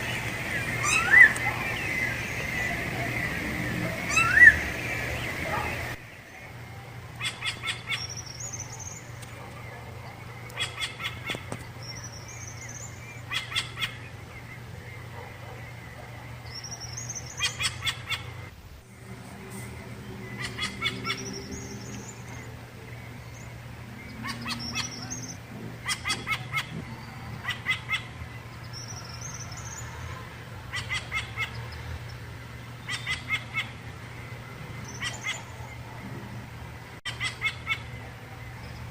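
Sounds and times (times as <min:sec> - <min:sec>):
thrush singing whistled phrases: 0:00.0 - 0:09.2
low steady hum: 0:00.0 - 0:38.9.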